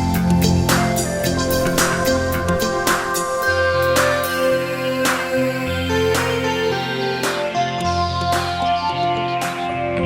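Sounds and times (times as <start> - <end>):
bass line: 0.5 - 6.9
regular beat: 0.7 - 7.5
plucked guitar: 0.8 - 6.9
held synth notes: 0.8 - 7.5.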